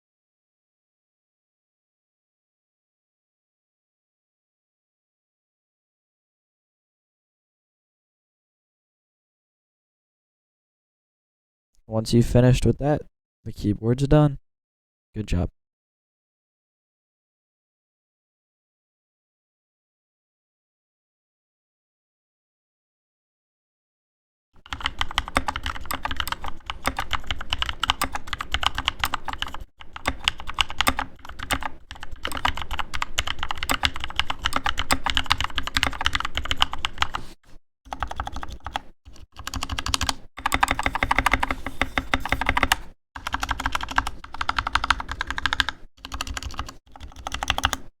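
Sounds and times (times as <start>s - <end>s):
fast keyboard typing: 24.6s - 47.9s.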